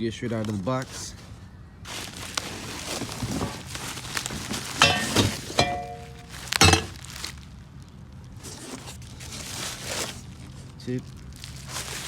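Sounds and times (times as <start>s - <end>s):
metal parts clanking: 4.8s - 7.0s.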